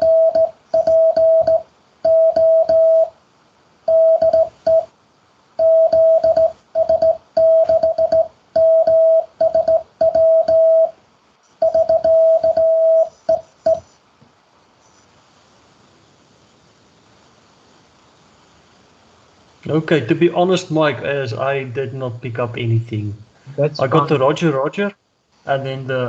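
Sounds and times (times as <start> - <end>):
morse code beeps: 0.0 - 3.1, 3.9 - 4.9, 5.6 - 11.0, 11.6 - 13.9.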